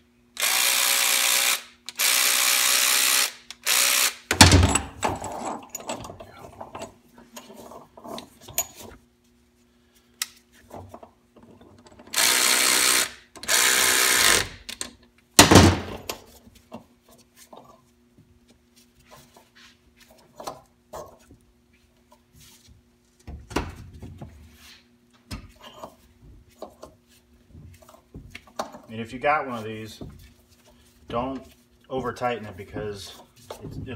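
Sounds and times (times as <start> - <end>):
power tool running: 0.4 - 4.3, 12.1 - 14.6.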